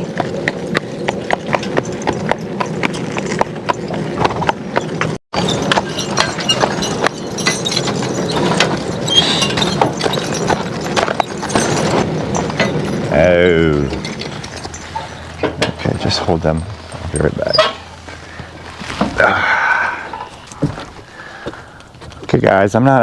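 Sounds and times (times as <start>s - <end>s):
rattle and rumble: 0.0s - 22.4s
horse hooves clopping: 0.0s - 22.8s.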